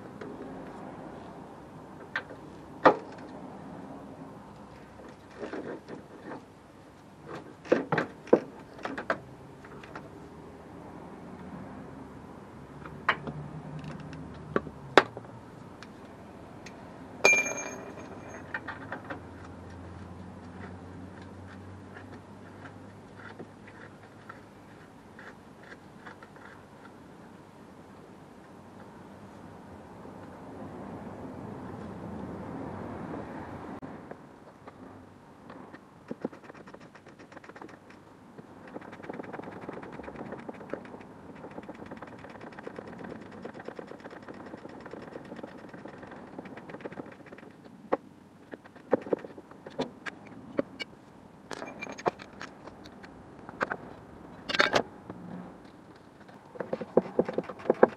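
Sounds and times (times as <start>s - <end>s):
metallic clinks: 17.2s - 18.7s.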